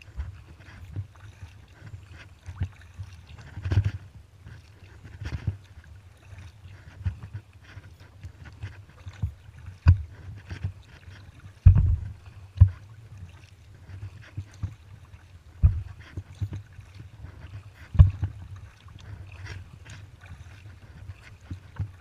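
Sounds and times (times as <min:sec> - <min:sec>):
paddle strokes splashing: 0:00.0 - 0:22.0
wind on microphone: 0:06.6 - 0:13.3, 0:13.9 - 0:22.0
knocks and thumps: 0:11.6 - 0:12.1, 0:15.6 - 0:15.9.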